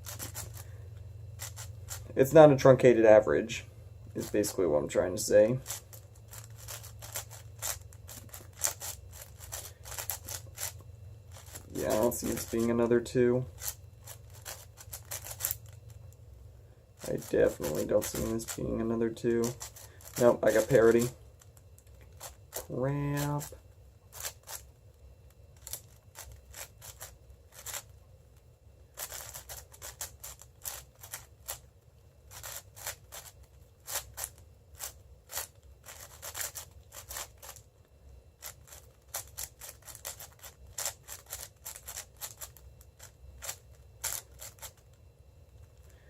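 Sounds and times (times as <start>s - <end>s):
speedcube layers clicking: 0.0s - 0.6s, 1.4s - 2.0s, 5.6s - 12.7s, 13.6s - 15.8s, 25.6s - 27.8s, 29.0s - 31.6s, 32.3s - 33.3s, 33.9s - 37.6s, 38.4s - 44.8s.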